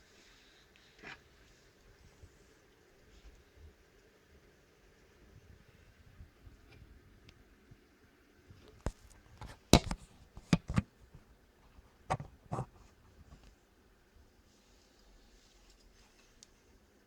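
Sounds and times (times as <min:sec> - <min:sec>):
computer hardware clicks and knocks: 0:08.9 - 0:10.9.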